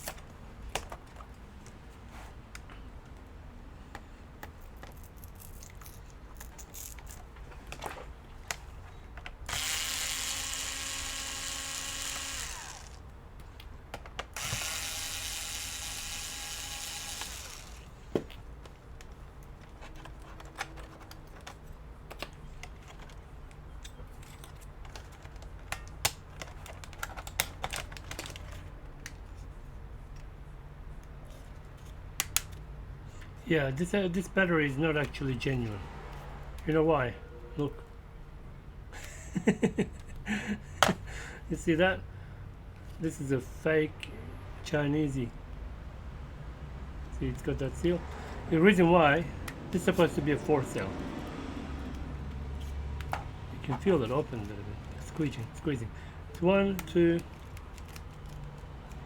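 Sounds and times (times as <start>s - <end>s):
plastic parts and screws clicking: 4.4s - 7.7s, 8.5s - 18.4s, 19.0s - 29.2s, 56.3s - 59.0s
electric screwdriver motor running: 9.5s - 13.0s, 14.4s - 18.0s.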